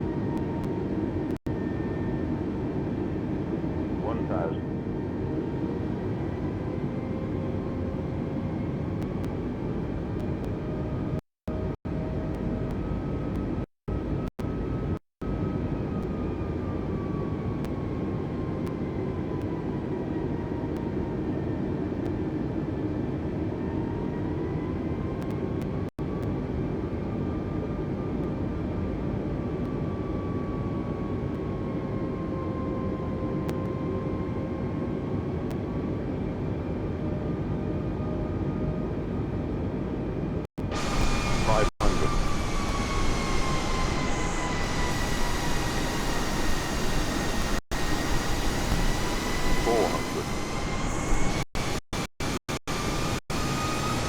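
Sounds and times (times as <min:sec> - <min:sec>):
airliner cabin roar: 0:36.4 - 0:51.8
jet engine tones: 0:40.7 - 0:54.0.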